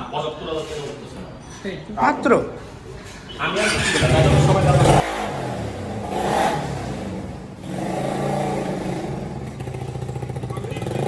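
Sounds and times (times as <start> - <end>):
motorcycle engine running: 3.6 - 11.0.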